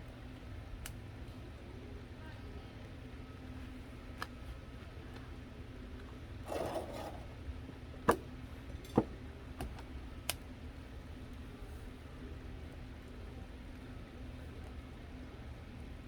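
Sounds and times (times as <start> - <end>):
rustling scrape: 6.4 - 7.4.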